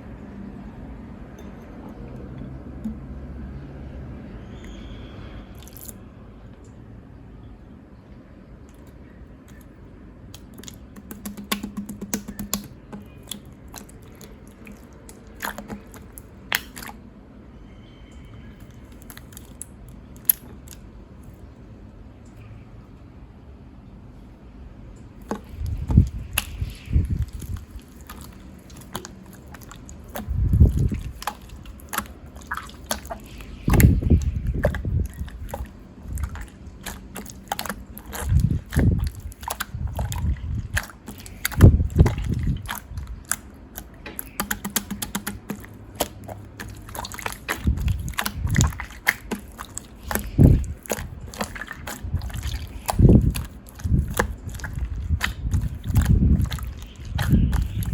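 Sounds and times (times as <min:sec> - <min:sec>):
slime squelching: 0:01.7 - 0:03.2, 0:04.5 - 0:06.0, 0:08.7 - 0:17.1, 0:17.7 - 0:21.6, 0:25.0 - 0:57.9
slime crackling pops: 0:15.1 - 0:16.9, 0:25.2 - 0:57.9.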